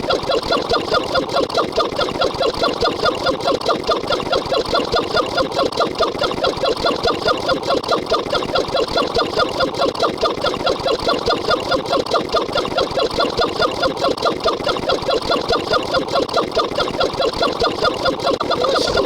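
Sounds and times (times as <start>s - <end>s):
sped-up computer voice: 18.4s - 19.0s.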